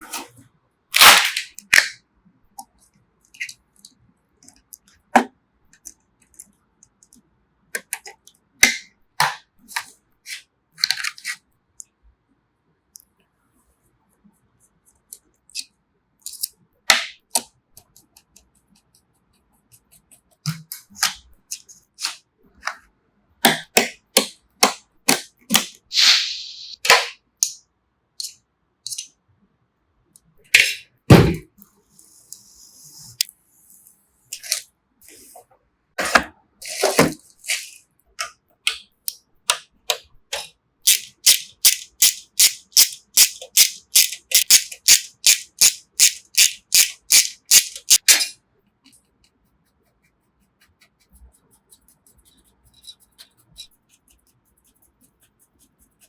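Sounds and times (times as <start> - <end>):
computer parts clicking and snapping: 38.7 - 48.4.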